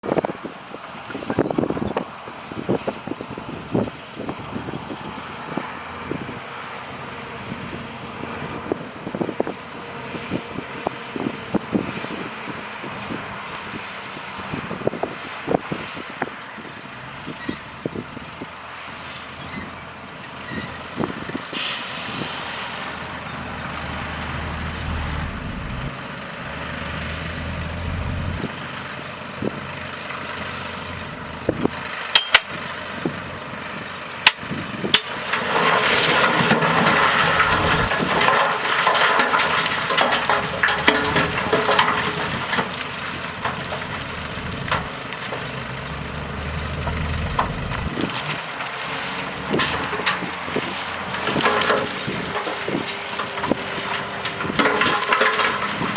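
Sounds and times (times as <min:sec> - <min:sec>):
heavy diesel machinery running: 0:00.1 - 0:55.9
rough rattling: 0:23.4 - 0:28.5, 0:35.0 - 0:39.6, 0:40.2 - 0:48.6
sharp metallic clanks: 0:32.1 - 0:32.7.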